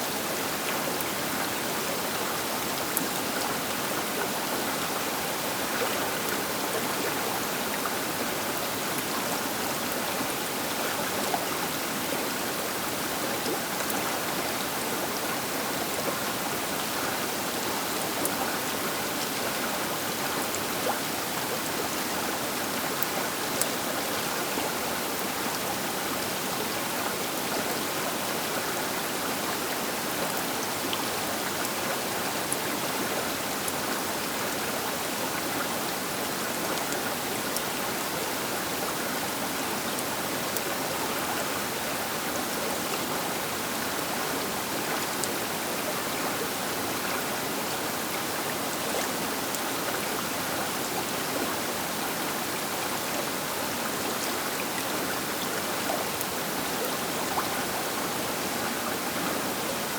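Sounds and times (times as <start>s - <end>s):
river water rushing: 0.0s - 59.9s.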